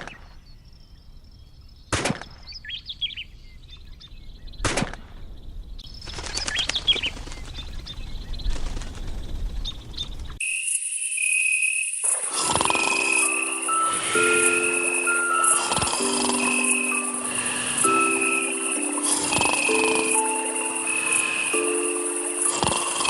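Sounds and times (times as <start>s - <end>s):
small birds chirping: 0.0s - 23.0s
sharp crack: 1.9s - 2.6s, 4.6s - 5.4s
music with chiming bell-like notes: 12.3s - 23.0s.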